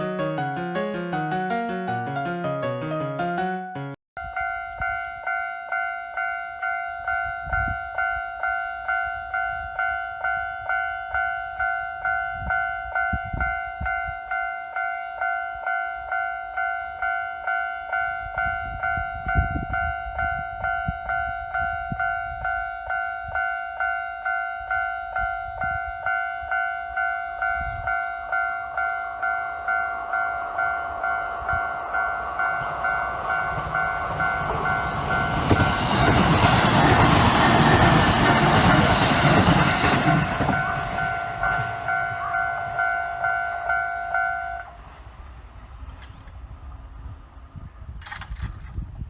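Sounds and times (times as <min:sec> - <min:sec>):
level-crossing warning bell: 0:04.2 - 0:44.8
train running noise: 0:15.2 - 0:49.0.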